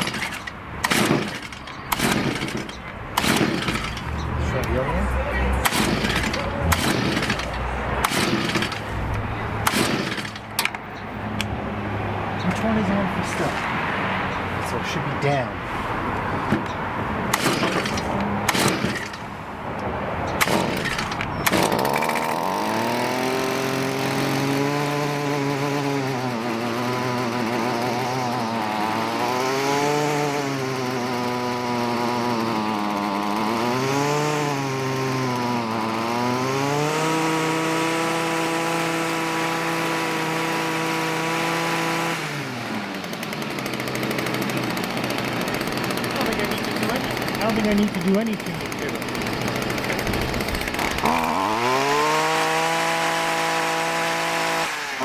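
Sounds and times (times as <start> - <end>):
starter cord pulls: 0.0 - 4.8, 5.6 - 10.8, 16.5 - 19.2, 20.3 - 25.6, 42.8 - 52.2
string trimmer engine revving: 0.0 - 13.6, 17.3 - 19.4, 20.3 - 55.0.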